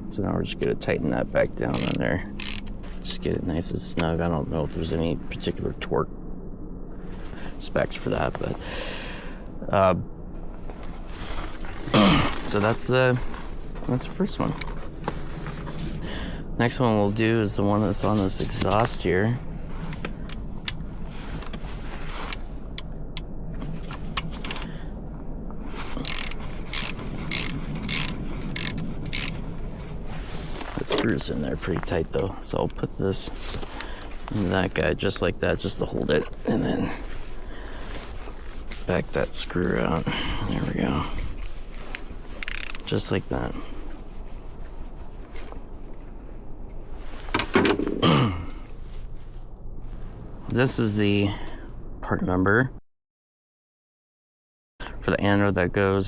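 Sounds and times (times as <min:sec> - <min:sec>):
low background noise: 0:00.0 - 0:52.7
faint handling ticks: 0:00.5 - 0:04.2, 0:25.8 - 0:29.4
socket ratchet clicking: 0:01.8 - 0:02.8, 0:26.0 - 0:29.4.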